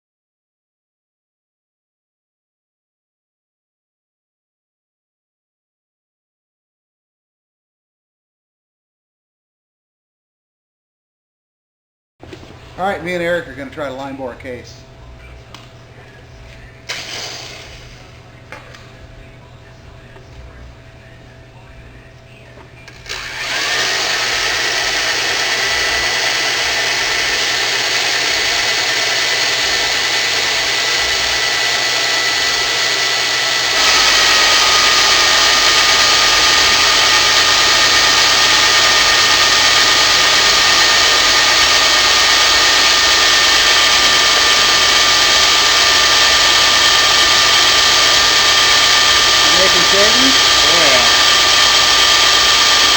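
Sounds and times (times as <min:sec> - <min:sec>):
electric motor whining: 0:22.9 - 0:52.9.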